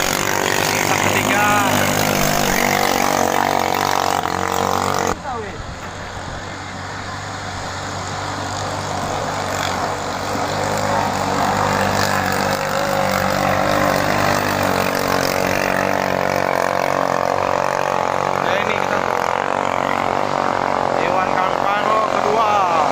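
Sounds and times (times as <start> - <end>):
boat engines at full throttle: 0.0 - 22.9.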